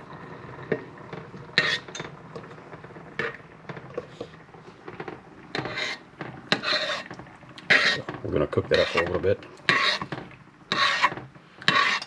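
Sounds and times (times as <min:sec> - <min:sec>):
scraping on a pot: 0:01.5 - 0:02.2, 0:05.5 - 0:12.0.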